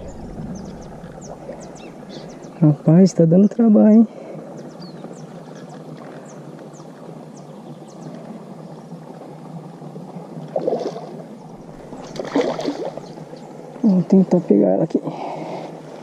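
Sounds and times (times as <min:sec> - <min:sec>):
water rushing: 0:00.0 - 0:04.5, 0:09.1 - 0:14.6
small birds chirping: 0:00.0 - 0:09.0, 0:11.4 - 0:14.3
fish splashing at water surface: 0:10.5 - 0:13.4.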